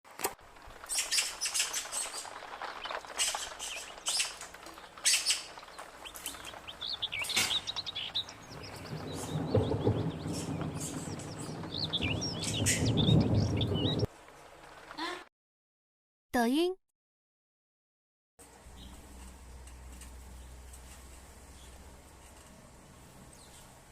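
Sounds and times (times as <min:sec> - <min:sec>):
small bird chirping: 0:00.9 - 0:14.1
low rumbling sound: 0:07.7 - 0:14.1.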